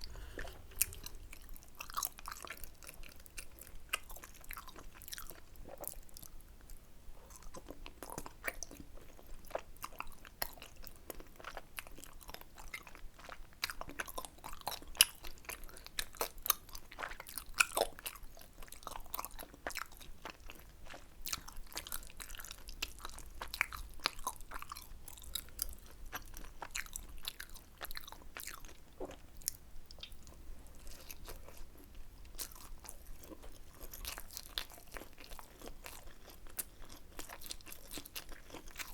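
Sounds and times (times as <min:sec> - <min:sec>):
crunchy chewing and mouth clicks: 0:00.0 - 0:38.9.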